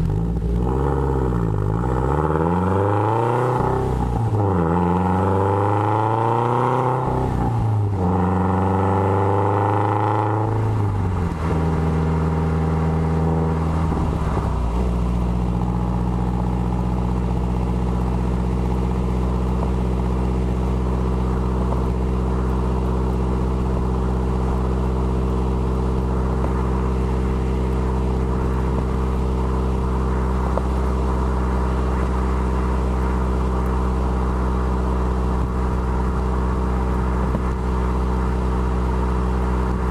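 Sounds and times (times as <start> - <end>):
car exhaust revving: 0.0 - 39.9.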